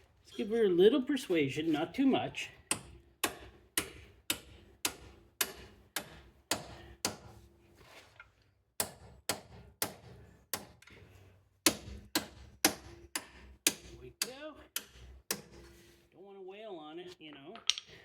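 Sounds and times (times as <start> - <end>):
hammer striking metal bolt: 17.6 - 17.9.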